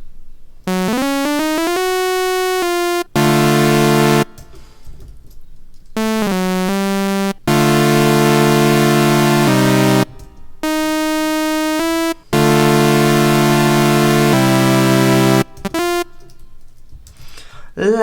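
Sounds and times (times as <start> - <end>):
synthesizer held chord: 0.7 - 4.4, 6.0 - 16.2
synthesizer notes stepping in pitch: 0.7 - 4.4, 6.0 - 16.2.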